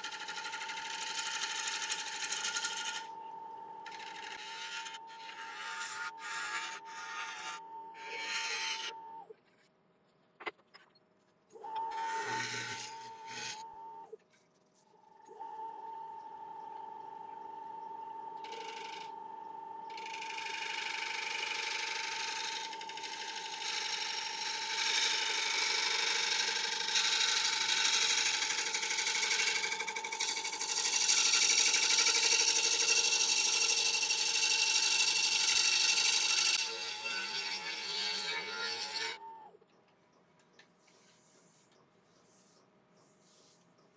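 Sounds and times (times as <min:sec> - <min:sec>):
turning tool cutting wood: 0:00.0 - 0:03.1, 0:03.8 - 0:09.2, 0:11.6 - 0:13.7, 0:18.4 - 0:19.2, 0:19.9 - 0:39.4
wood lathe whining: 0:00.0 - 0:09.2, 0:11.6 - 0:14.0, 0:18.0 - 0:39.5.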